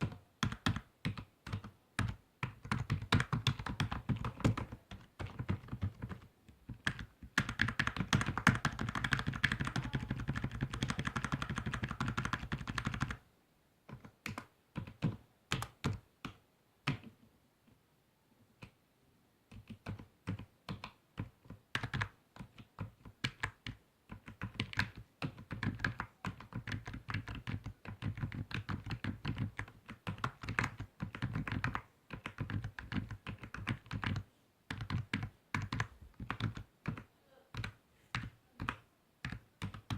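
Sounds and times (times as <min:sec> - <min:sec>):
typing on computer keyboard: 0:00.0 - 0:13.2, 0:13.9 - 0:17.2, 0:19.5 - 0:39.9.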